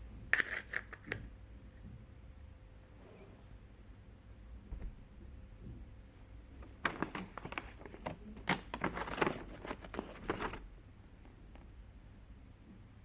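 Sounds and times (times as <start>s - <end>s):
paper crinkling and rustling: 6.6s - 10.7s.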